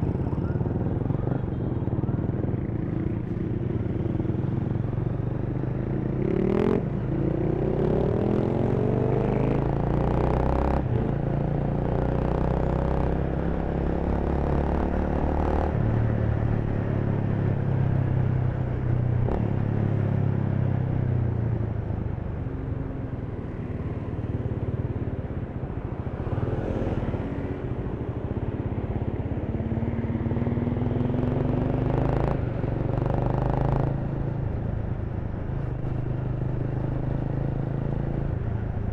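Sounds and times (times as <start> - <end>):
motorcycle engine accelerating: 2.0 - 17.8, 26.2 - 34.5.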